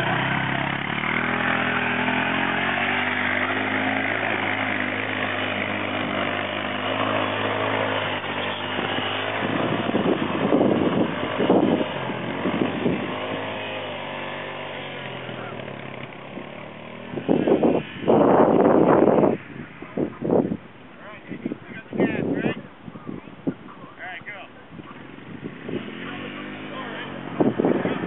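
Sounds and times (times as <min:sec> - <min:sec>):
atv engine revving: 0:00.0 - 0:28.0.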